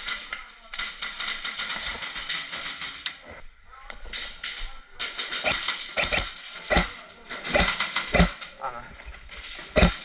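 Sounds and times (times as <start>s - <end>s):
airsoft guns firing sharp clicks: 5.3s - 6.9s.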